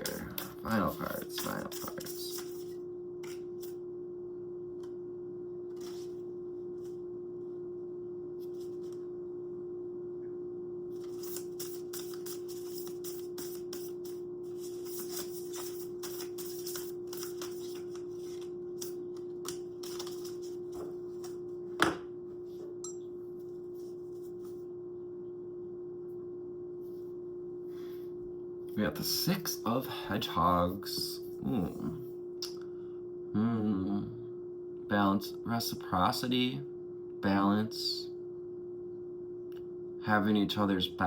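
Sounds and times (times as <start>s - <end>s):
steady humming tone: 0.0s - 41.0s
cards shuffling: 11.0s - 21.4s.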